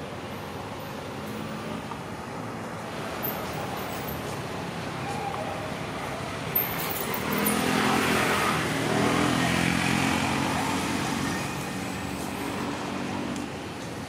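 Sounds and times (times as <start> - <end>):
motor vehicle passing by: 5.7 - 13.6.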